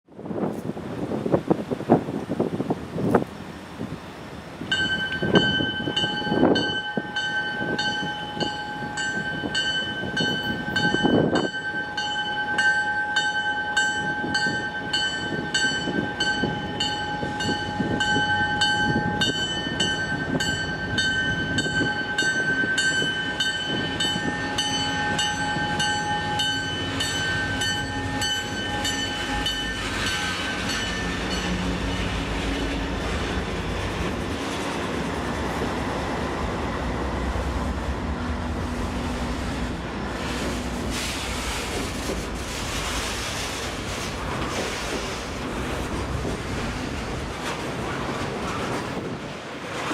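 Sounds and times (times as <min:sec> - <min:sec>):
freight train getting under way: 0:00.2 - 0:49.9
bell ringing: 0:04.7 - 0:31.6.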